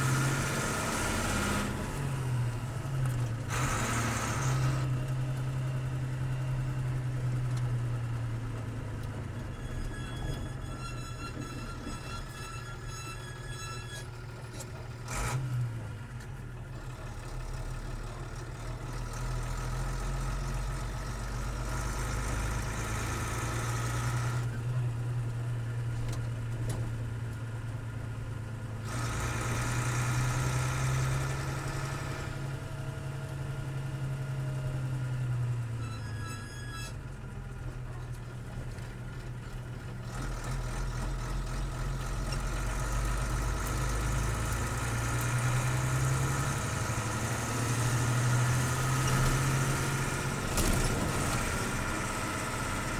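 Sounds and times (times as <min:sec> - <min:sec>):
diesel truck engine running: 0:00.0 - 0:52.9
sharp clunk: 0:50.5 - 0:51.6.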